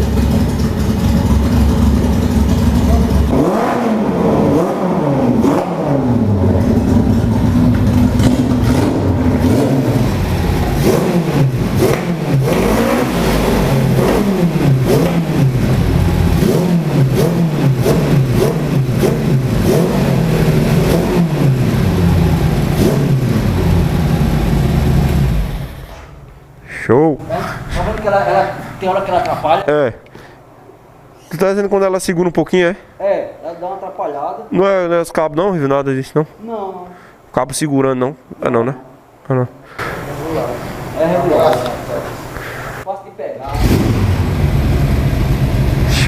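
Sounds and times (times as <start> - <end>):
motorcycle engine revving: 0.0 - 26.0, 43.5 - 46.0.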